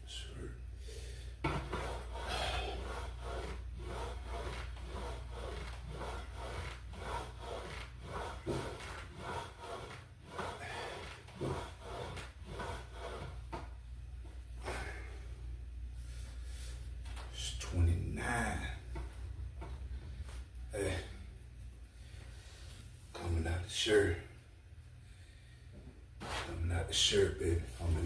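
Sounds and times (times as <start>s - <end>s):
exercise machine rubbing and creaking: 1.4s - 15.2s.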